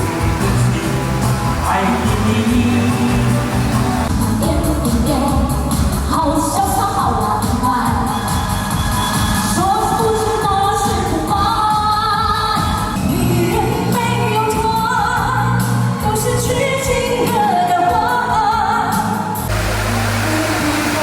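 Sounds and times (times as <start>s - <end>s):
person singing: 0.0s - 5.3s
backing music: 0.0s - 16.8s, 19.0s - 21.0s.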